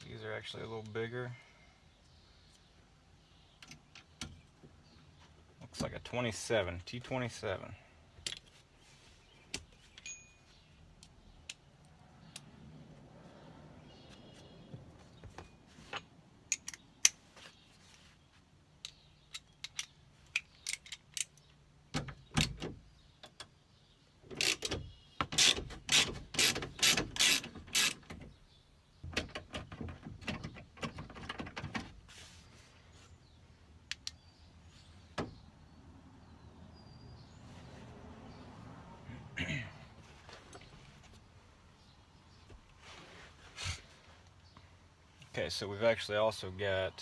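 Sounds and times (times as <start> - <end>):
ratchet wrench clicking: 25.4 - 28.0.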